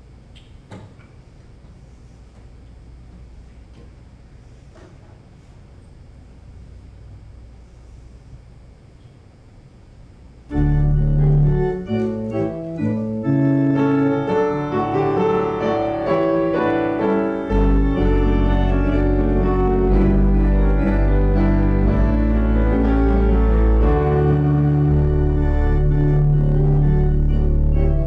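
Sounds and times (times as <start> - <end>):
deep bass line: 10.5 - 28.0
keyboard playing held chords: 10.5 - 28.0.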